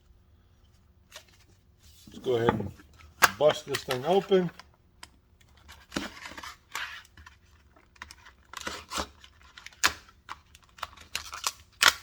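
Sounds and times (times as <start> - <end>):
packaging torn open: 8.0 - 12.0.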